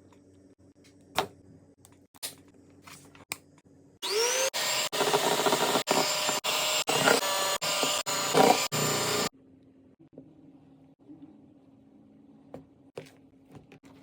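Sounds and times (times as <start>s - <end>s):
electric kitchen mixer running: 4.0s - 9.3s.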